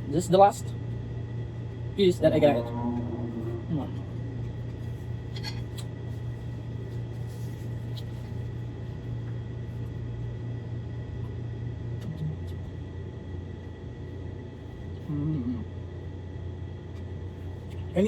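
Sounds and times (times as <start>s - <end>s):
faint high whine: 0.0s - 7.7s
steady low hum: 0.0s - 18.0s.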